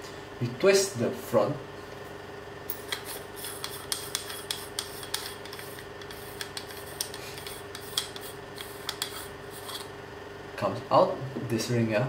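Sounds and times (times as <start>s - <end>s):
steady hum: 0.0s - 12.0s
metal threads scraping: 2.7s - 9.9s.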